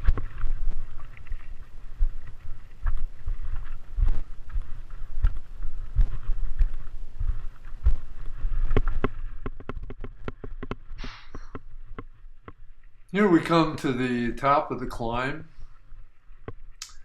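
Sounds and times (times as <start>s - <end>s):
wind buffeting microphone: 0.0s - 12.6s
bike rumbling and knocking: 0.0s - 12.9s
bike clicking rattles: 8.5s - 12.9s.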